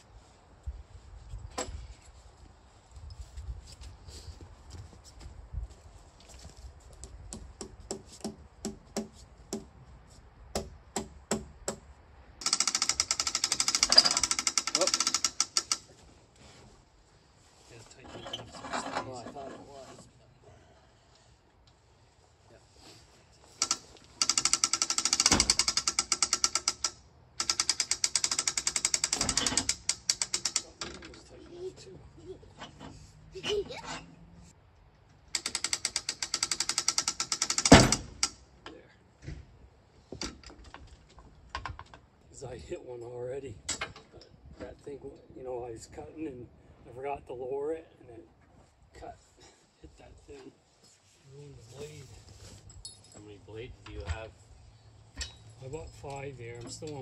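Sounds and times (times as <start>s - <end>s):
ratchet clicking rapidly: 12.4s - 15.8s, 23.6s - 30.8s, 35.3s - 38.4s
small engine clattering: 12.4s - 15.9s, 23.6s - 31.2s, 35.3s - 38.4s.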